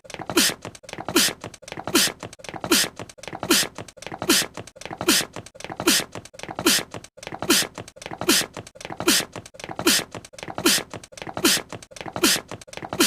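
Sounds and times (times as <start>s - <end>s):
cartoon voice sneezing: 4.3s - 11.6s, 12.2s - 13.0s.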